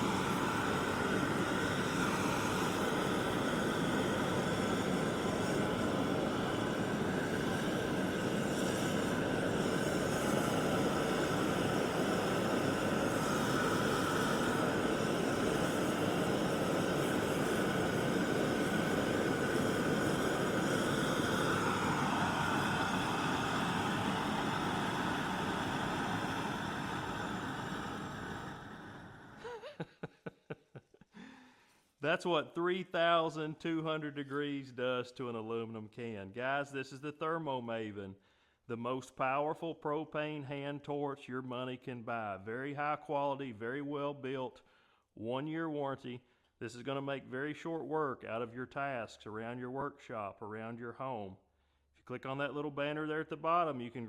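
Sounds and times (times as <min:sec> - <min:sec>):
hand torch flame hissing: 0:00.0 - 0:30.7.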